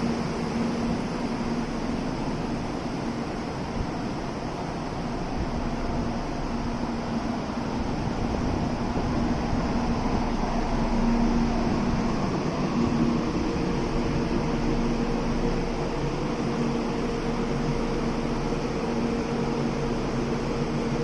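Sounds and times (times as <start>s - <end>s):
standing train humming: 0.0s - 21.0s.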